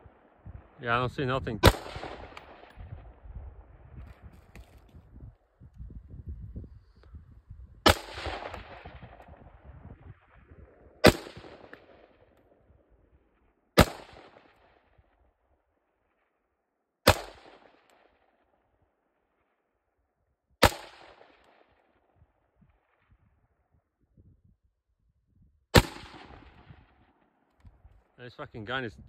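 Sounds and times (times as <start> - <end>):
rifle shots with echo: 0.0 - 3.2, 7.8 - 12.6, 13.8 - 15.0, 17.0 - 18.3, 20.6 - 22.0, 25.7 - 27.3.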